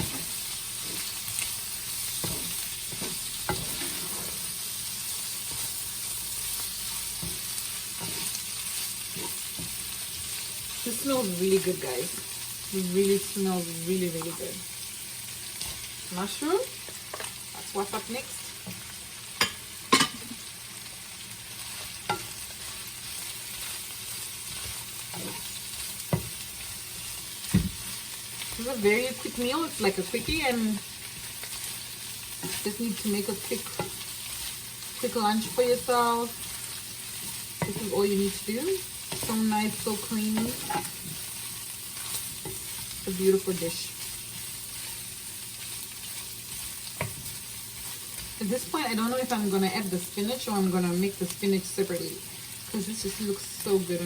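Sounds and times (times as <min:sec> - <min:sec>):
chicken sizzling in a frying pan: 0:00.0 - 0:54.0
utensil scraping a pan: 0:02.2 - 0:04.6, 0:08.0 - 0:08.4, 0:24.5 - 0:26.3, 0:39.1 - 0:41.3.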